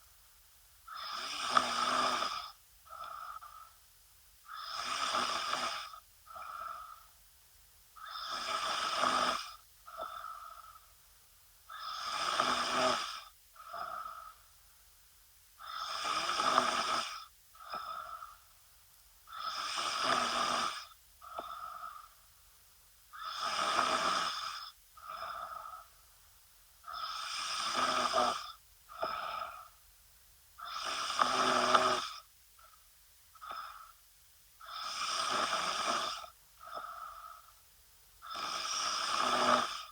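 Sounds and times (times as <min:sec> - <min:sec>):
soft breath sound: 0:00.8 - 0:07.2, 0:08.0 - 0:12.6, 0:21.2 - 0:27.0, 0:34.6 - 0:37.6
woman snoring: 0:00.9 - 0:03.7, 0:04.5 - 0:07.0, 0:08.0 - 0:10.8, 0:11.7 - 0:14.4, 0:15.6 - 0:18.4, 0:19.3 - 0:22.2, 0:23.2 - 0:25.9, 0:26.9 - 0:29.8, 0:30.6 - 0:32.3, 0:34.6 - 0:37.6, 0:38.2 - 0:39.9.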